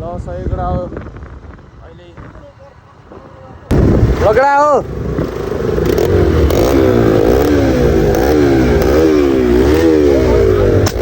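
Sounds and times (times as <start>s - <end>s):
motorcycle engine revving: 3.7s - 11.0s.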